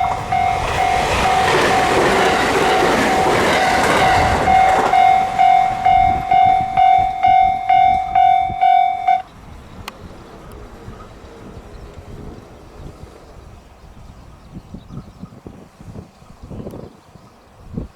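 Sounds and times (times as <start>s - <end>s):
level crossing alarm dinging: 0.0s - 9.3s
train passing: 0.0s - 14.6s.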